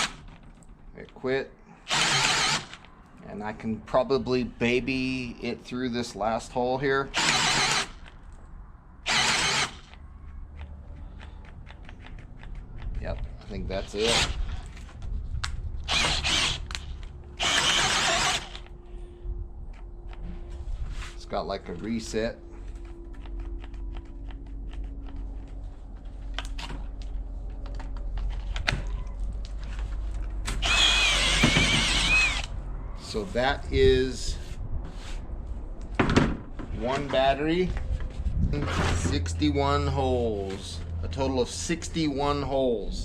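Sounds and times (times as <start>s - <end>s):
drill cutting into wood: 1.9s - 2.8s, 7.2s - 8.0s, 9.1s - 9.9s, 13.9s - 14.4s, 15.9s - 16.8s, 17.4s - 18.7s, 30.6s - 32.5s.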